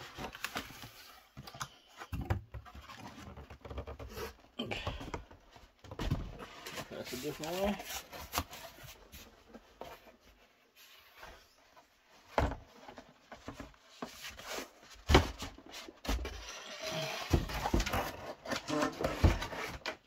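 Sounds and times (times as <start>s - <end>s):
box knocks and thumps: 4.8s - 6.5s, 17.2s - 20.0s.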